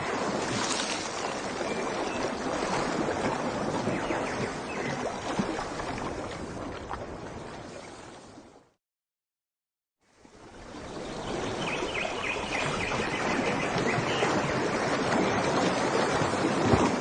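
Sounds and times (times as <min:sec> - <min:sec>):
water splashing and lapping: 0:00.0 - 0:08.8, 0:10.1 - 0:17.0.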